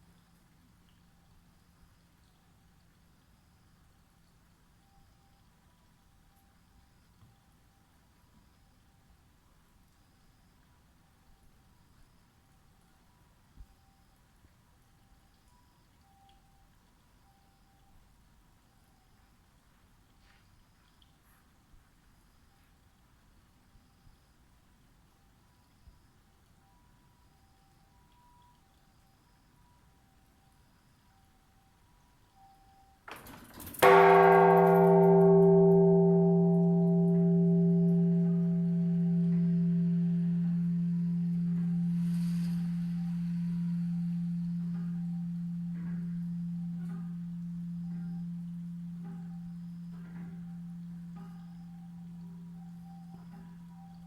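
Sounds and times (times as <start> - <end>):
temple bell ringing: 33.8 - 54.0
faint low rumble: 34.4 - 54.0.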